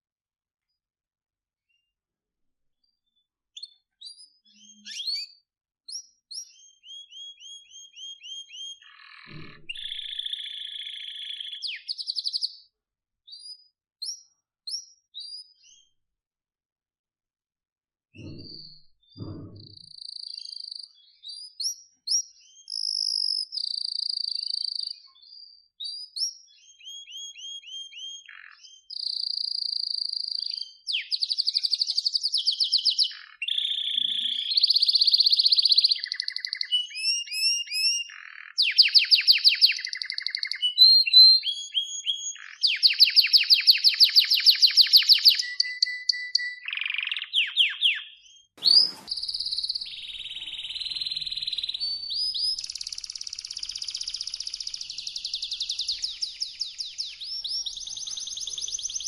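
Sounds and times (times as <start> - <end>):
canary singing: 3.6 - 5.4, 6.4 - 12.6, 26.6 - 59.0.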